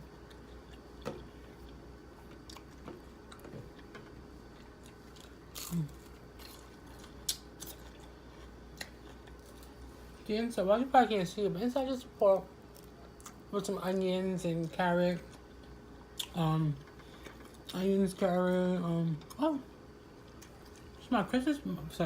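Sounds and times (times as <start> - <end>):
person chewing crisp food: 0.0 - 9.8.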